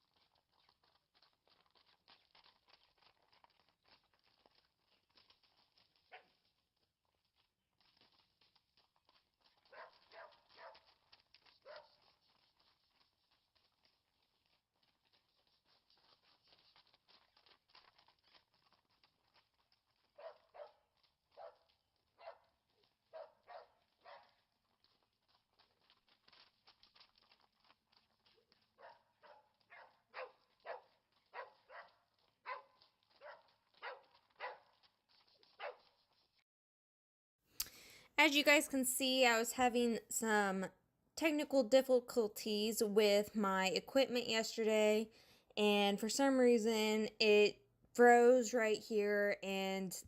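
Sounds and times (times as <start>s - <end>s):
dog barking faintly: 9.7s - 10.9s, 11.6s - 12.0s, 20.2s - 22.5s, 23.1s - 24.4s, 28.8s - 34.7s.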